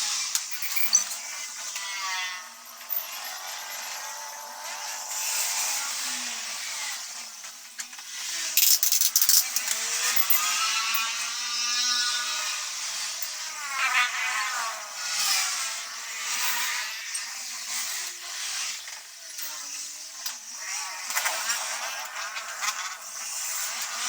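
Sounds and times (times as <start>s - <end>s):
electric motor whining: 1.1s - 7.4s.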